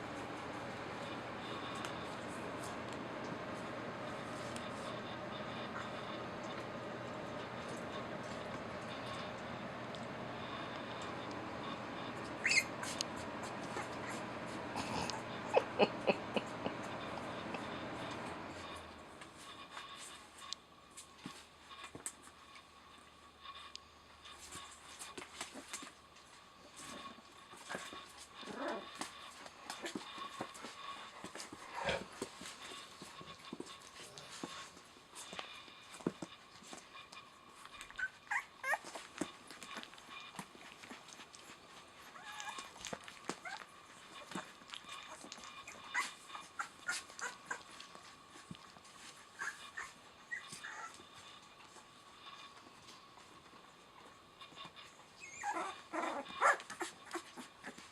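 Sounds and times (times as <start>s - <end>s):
puppies squeaking and whimpering: 12.2s - 14.2s, 37.8s - 39.1s, 42.1s - 42.7s, 43.3s - 47.8s, 49.3s - 51.0s, 55.2s - 57.9s.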